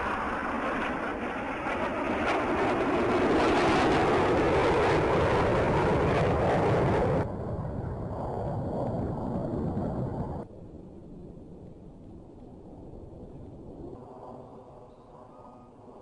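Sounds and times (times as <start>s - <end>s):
jet aircraft rushing past: 0.0s - 10.5s.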